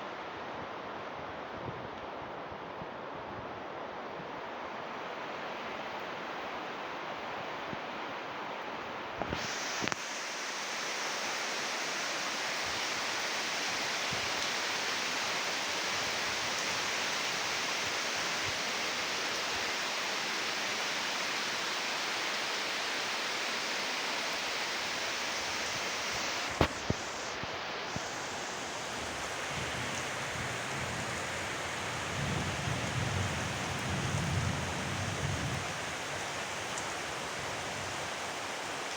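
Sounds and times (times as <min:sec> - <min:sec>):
heavy rain falling: 0:09.2 - 0:38.9.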